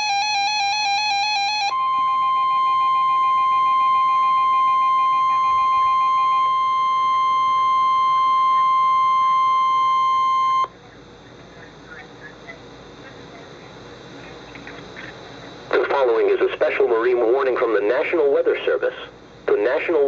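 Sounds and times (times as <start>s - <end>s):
long warning alarm beep: 0.0s - 10.7s.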